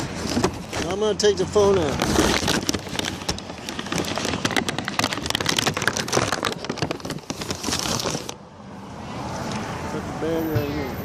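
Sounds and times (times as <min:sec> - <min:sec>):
paper sack crinkling: 0:00.0 - 0:08.4.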